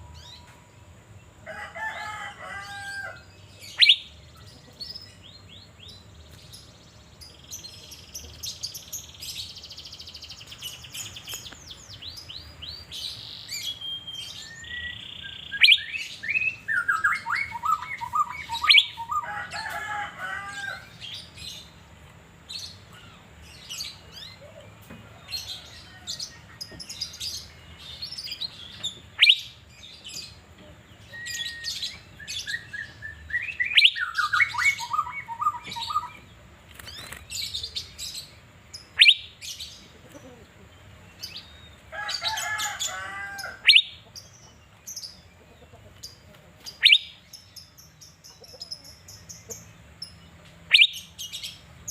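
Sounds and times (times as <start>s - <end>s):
bird singing chirps and whistles: 3.7s - 4.1s, 13.6s - 19.2s, 28.0s - 29.6s, 31.1s - 36.2s, 38.8s - 39.5s, 43.6s - 44.0s, 46.8s - 47.2s, 50.7s - 51.5s.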